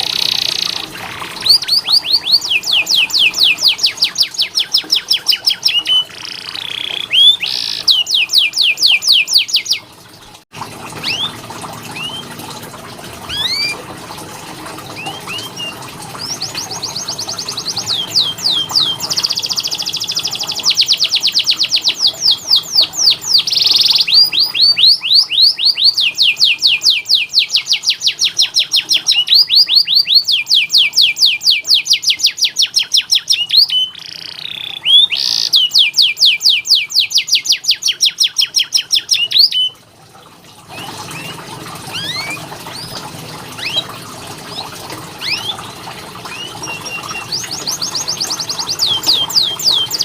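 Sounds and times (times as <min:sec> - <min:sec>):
canary singing trills: 0:00.0 - 0:09.9, 0:11.0 - 0:12.3, 0:13.3 - 0:13.8, 0:14.9 - 0:39.8, 0:40.7 - 0:43.0, 0:43.6 - 0:50.0.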